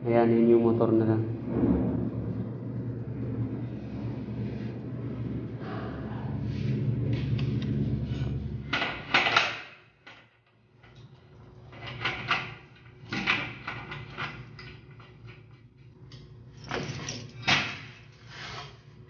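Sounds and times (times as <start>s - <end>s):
low mechanical hum: 0.0s - 19.0s
knocks and clatter of handling: 8.7s - 15.8s, 16.6s - 18.0s.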